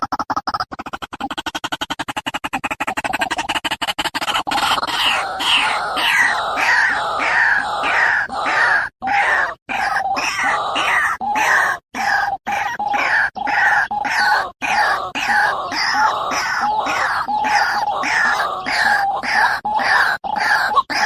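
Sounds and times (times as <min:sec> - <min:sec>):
waterhen calling: 0:04.2 - 0:21.0.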